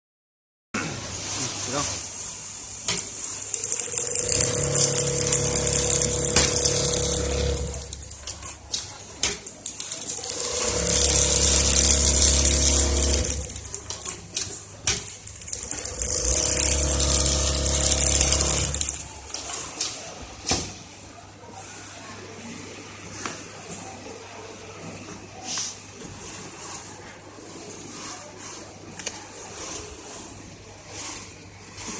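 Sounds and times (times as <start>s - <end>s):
sewing machine stitching: 3.1s - 19.8s.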